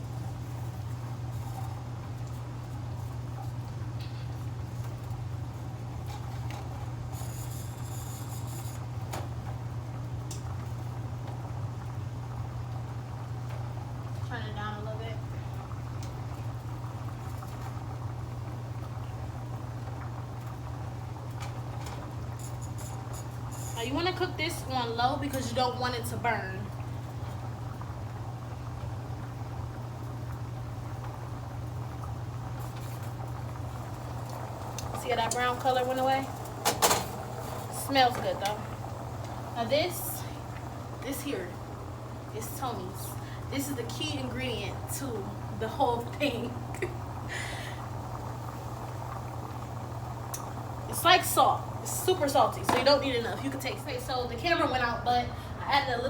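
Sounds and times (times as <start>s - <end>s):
sauce simmering in a pan: 0.0s - 55.6s
pot of water boiling: 0.0s - 56.0s
low hum: 30.7s - 56.0s.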